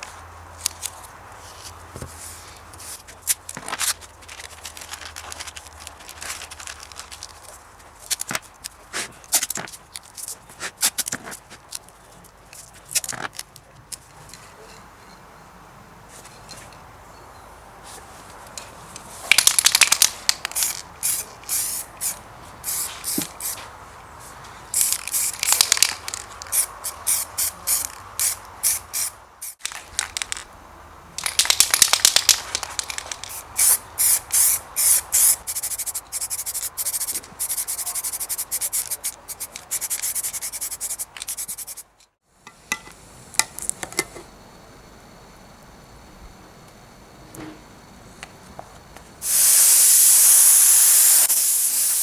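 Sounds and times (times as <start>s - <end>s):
spray paint hissing: 20.5s - 23.6s, 24.7s - 29.6s, 33.2s - 41.9s, 49.2s - 52.0s.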